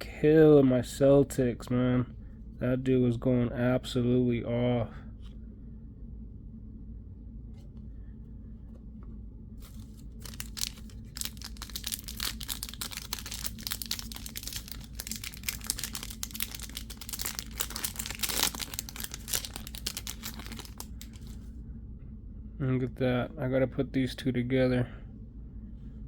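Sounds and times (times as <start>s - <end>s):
low steady hum: 0.0s - 26.0s
foil wrapper crinkling and tearing: 9.6s - 21.4s.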